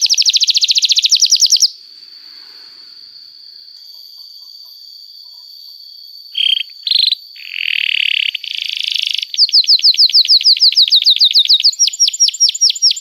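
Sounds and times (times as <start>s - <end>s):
canary singing: 0.0s - 1.8s, 6.4s - 13.0s.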